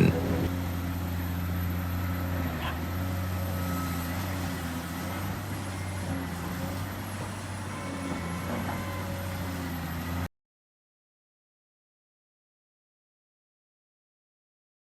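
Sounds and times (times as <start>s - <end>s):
diesel machinery engine drone: 0.0s - 10.3s.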